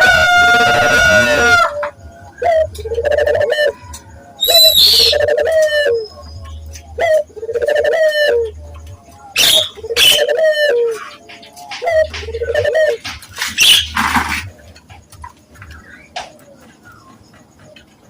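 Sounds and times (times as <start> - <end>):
dove cooing: 0.0 - 18.0
high bird calls: 0.0 - 18.0.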